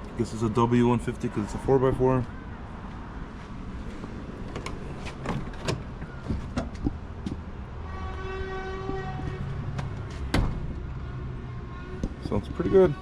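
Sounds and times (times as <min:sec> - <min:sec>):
horn tone: 0:07.8 - 0:09.8.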